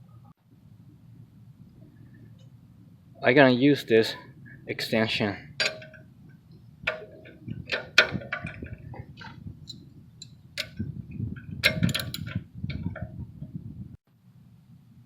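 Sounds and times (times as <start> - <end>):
metallic clicks of hand tools: 9.7 - 10.8, 11.6 - 12.4.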